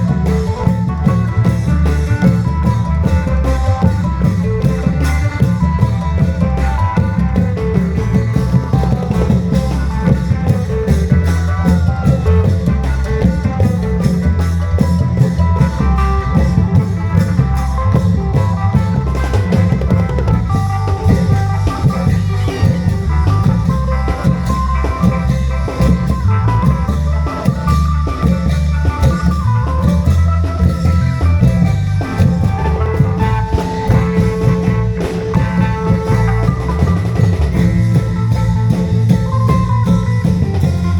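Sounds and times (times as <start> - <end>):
high percussion hits: 0.0 - 40.9
long drums beating: 0.0 - 40.9
reed mouth organ melody: 19.2 - 39.1.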